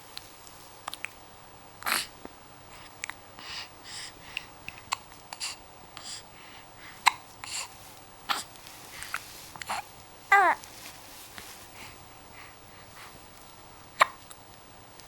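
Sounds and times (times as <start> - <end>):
baby hiccuping: 7.0 - 7.6, 9.6 - 10.6, 14.0 - 14.3.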